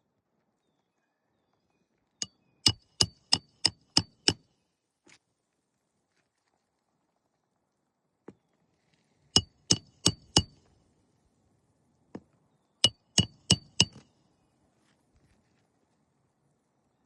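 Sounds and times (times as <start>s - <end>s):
hammer driving nails: 2.6s - 4.4s, 9.4s - 10.6s, 12.8s - 14.0s.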